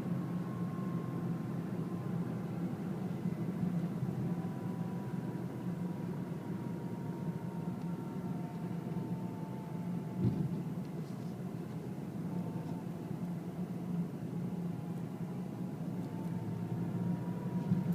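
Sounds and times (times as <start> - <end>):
faint high whine: 0.0 - 17.9
thump: 10.2 - 10.6
car engine running: 16.1 - 17.9.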